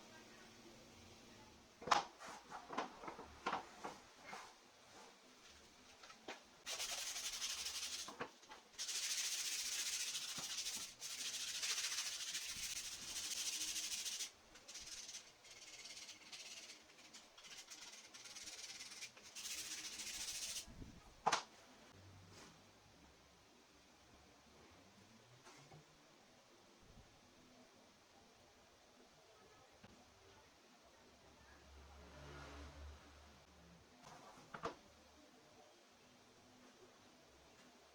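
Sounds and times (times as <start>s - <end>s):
hand sanding wood: 6.7s - 8.1s, 8.8s - 20.6s.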